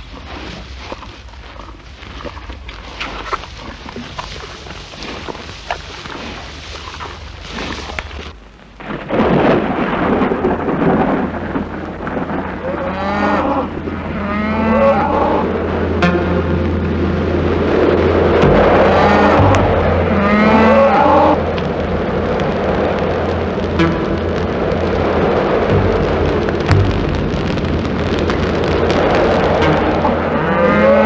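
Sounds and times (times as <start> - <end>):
cattle lowing: 0.0 - 8.4
fire crackling and popping: 0.0 - 31.0.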